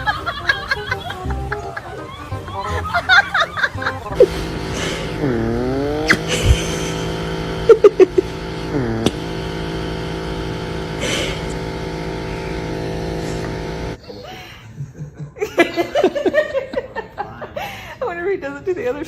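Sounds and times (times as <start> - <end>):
motor humming: 3.9 - 14.0.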